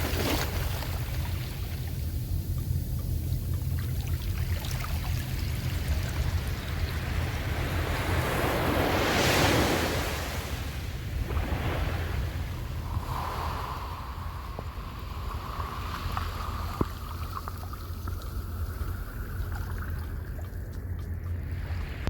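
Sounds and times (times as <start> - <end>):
sea waves breaking on shore: 0.0 - 2.0, 4.4 - 22.0
wind rumble on microphone: 0.0 - 22.0.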